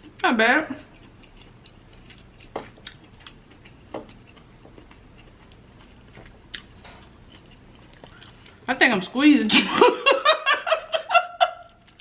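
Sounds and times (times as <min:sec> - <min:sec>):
chewing: 0:00.8 - 0:08.7.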